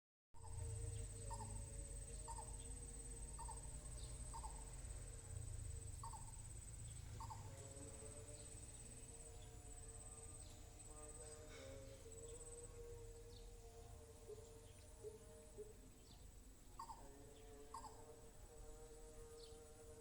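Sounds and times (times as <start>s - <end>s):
high-pitched insect drone: 0.4s - 15.6s.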